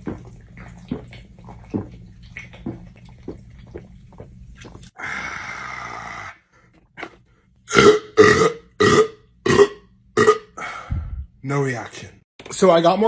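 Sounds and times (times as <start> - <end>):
person exhaling breathily: 10.6 - 11.3.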